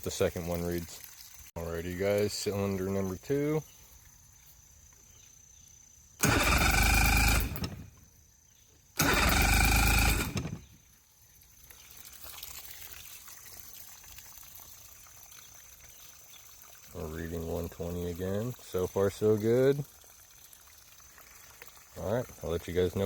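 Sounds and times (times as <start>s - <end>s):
electric starter cranking engine: 6.2s - 8.1s, 9.0s - 10.8s.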